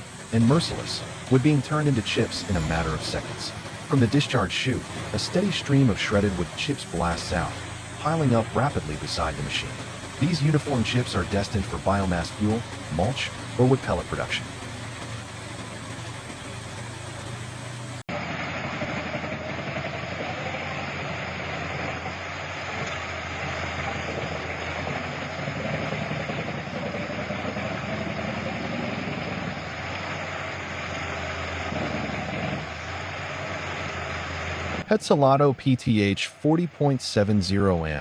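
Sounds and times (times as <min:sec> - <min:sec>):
wood chipper engine running: 0:00.0 - 0:34.9.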